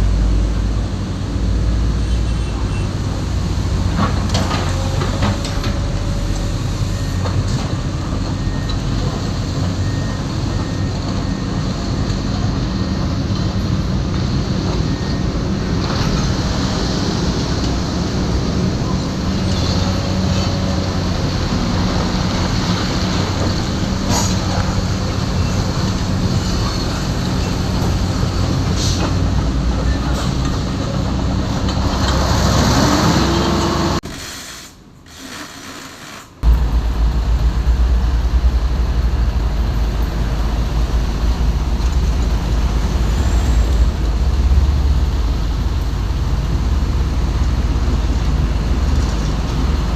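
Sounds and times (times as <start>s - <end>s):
heavy diesel engine running: 0.0s - 34.0s, 36.4s - 49.9s
deep low rumble: 36.4s - 48.2s.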